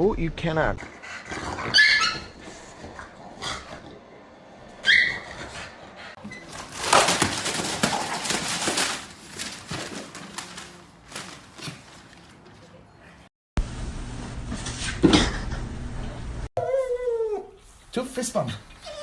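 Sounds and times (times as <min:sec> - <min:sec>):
dog high-pitched calls: 0:01.7 - 0:02.4, 0:04.8 - 0:05.4
loud rustling: 0:06.4 - 0:12.6.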